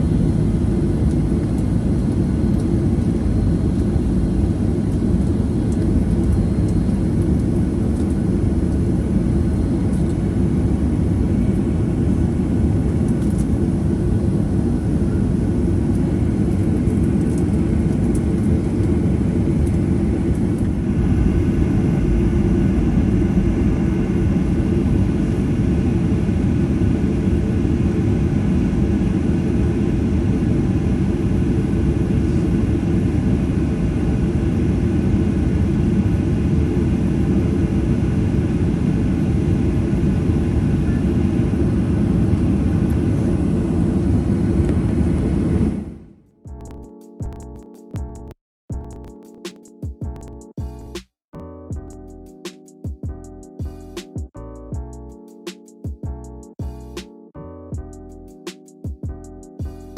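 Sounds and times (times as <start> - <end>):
airplane taxiing rumble: 0.0 - 46.1.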